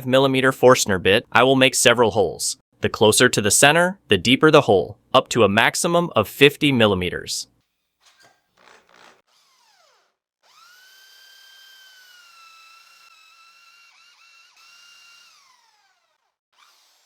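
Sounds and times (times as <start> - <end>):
electric drill whining into wood: 8.6 - 17.0.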